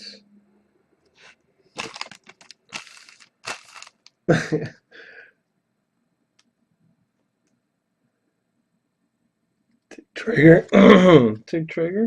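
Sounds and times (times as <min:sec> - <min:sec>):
card pack wrapper crinkling: 0:01.8 - 0:04.1
cards rustling: 0:01.8 - 0:04.1.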